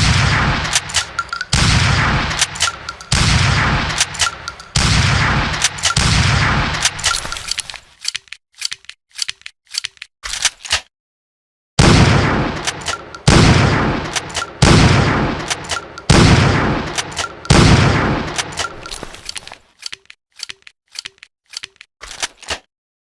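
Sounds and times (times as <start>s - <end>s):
shotgun shots echoing: 0.0s - 7.5s, 11.8s - 19.2s
pump action clicks: 0.8s - 1.5s.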